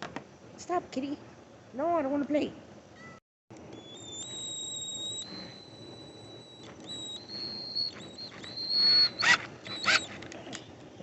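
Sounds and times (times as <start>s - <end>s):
power drill whining: 3.6s - 10.7s
short rasping bursts: 3.9s - 10.2s.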